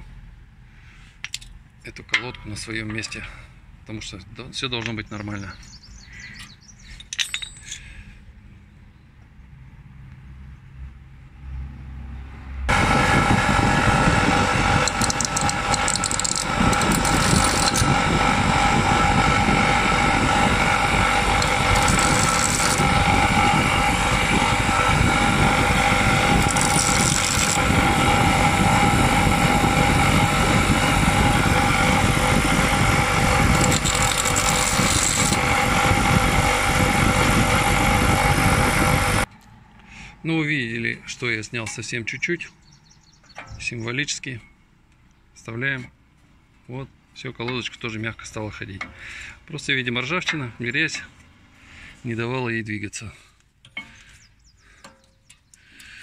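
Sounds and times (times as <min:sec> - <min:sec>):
power tool grinding: 0:12.7 - 0:39.4.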